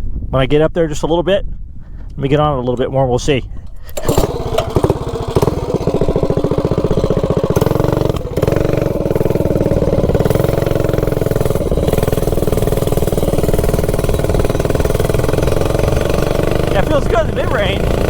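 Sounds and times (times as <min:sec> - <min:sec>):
small engine revving hard: 0:03.7 - 0:18.0.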